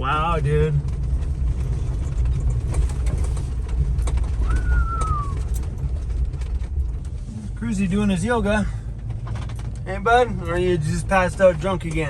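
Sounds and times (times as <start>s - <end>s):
van engine and tyres rumbling: 0.0s - 12.0s
light rattles: 0.3s - 12.0s
short falling whine: 4.5s - 5.4s.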